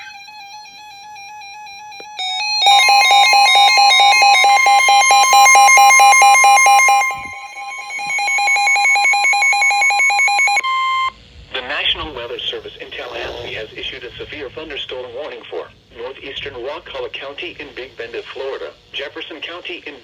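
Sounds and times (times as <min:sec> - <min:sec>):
soft electronic tune: 0:00.0 - 0:11.1
warbling buzzy alarm beeps: 0:00.0 - 0:11.2
steady high tone: 0:00.0 - 0:11.7.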